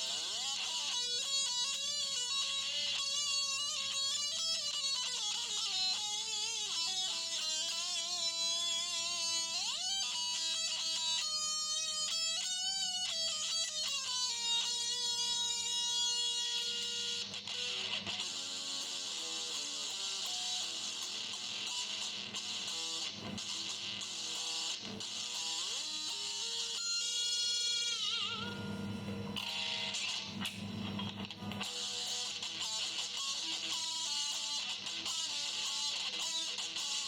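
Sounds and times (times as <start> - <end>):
electric guitar lead line: 0.0 - 37.0
amplifier hum and hiss: 14.3 - 37.0.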